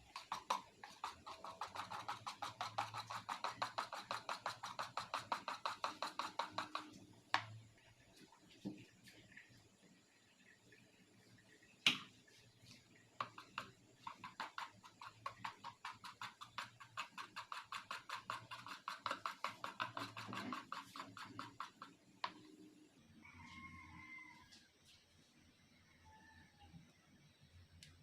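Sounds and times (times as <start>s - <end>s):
utensil beating batter in bowl: 0.0s - 9.5s, 11.8s - 22.9s.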